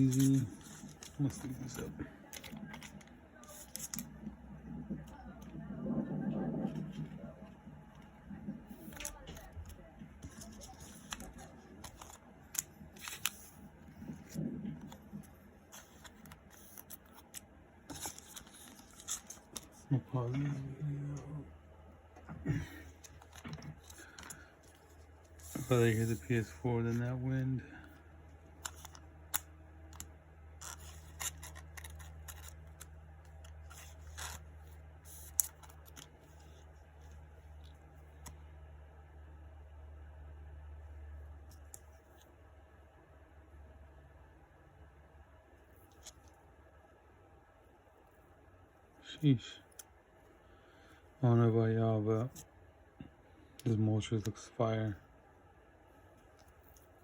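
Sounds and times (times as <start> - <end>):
low murmur: 0.0 - 12.0
plastic and cardboard rustling: 0.0 - 21.2, 22.6 - 27.3
items handled by hand: 0.0 - 21.3, 22.0 - 27.3.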